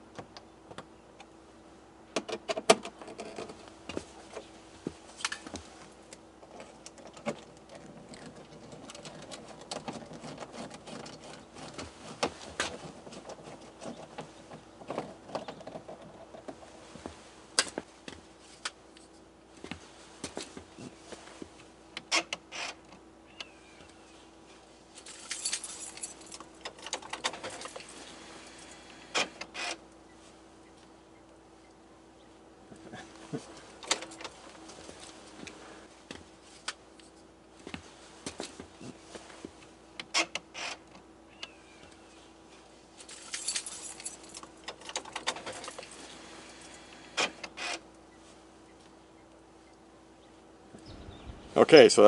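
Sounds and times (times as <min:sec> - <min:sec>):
faint steady hum: 0:00.0 - 0:52.0
metallic rattles of tools: 0:25.0 - 0:28.8.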